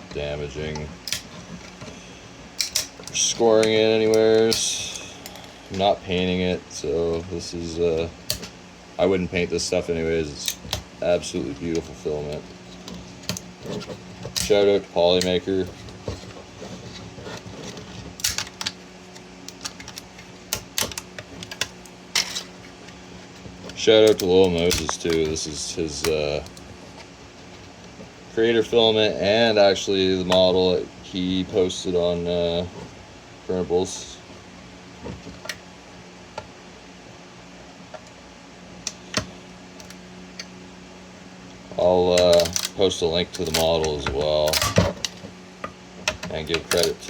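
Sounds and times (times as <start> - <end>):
steady low hum: 0.0 - 47.0
sharp plastic crack: 42.2 - 45.3.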